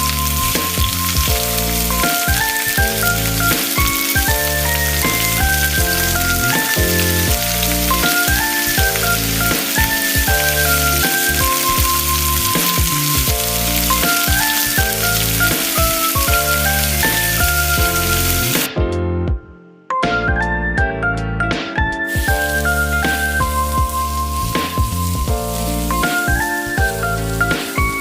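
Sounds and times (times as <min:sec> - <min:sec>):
food frying in hot fat: 0:00.0 - 0:18.7, 0:22.1 - 0:28.0
background music: 0:00.0 - 0:28.0.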